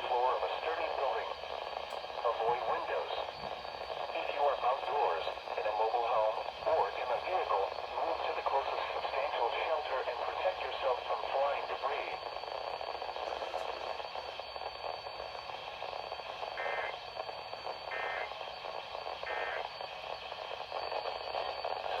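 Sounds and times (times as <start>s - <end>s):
radio hiss: 0.0s - 22.0s
buzzy data bursts: 16.6s - 16.9s, 17.9s - 18.3s.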